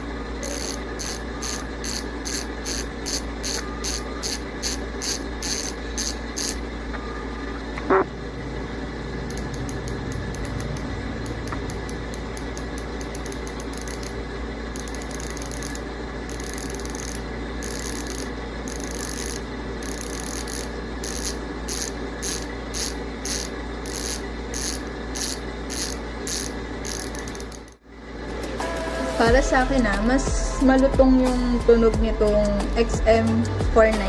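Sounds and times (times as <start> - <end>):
bicycle hub ratchet clicking: 0.4 - 6.6, 9.2 - 27.8.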